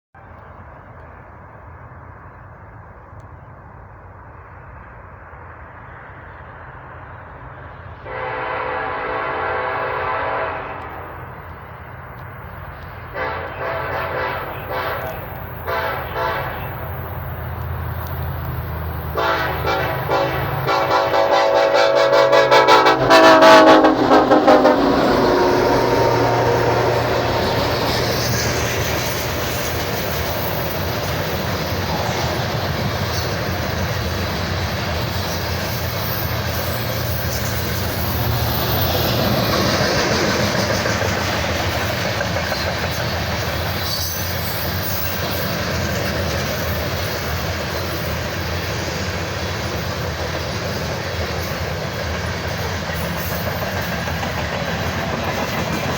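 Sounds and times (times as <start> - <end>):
freight train rumbling on rails: 0.2 - 55.9
locomotive air horn blasts: 8.0 - 11.2, 13.1 - 16.8, 19.2 - 27.8.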